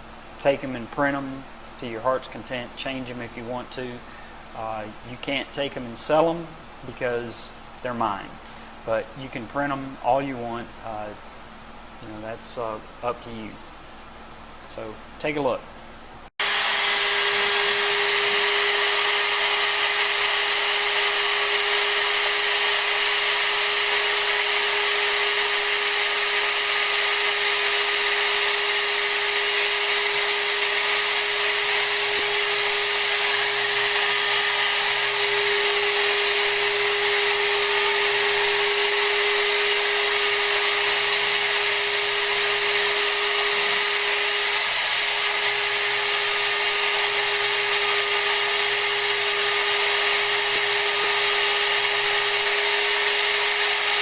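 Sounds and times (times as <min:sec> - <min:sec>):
milling spindle whining: 0:16.4 - 0:54.0.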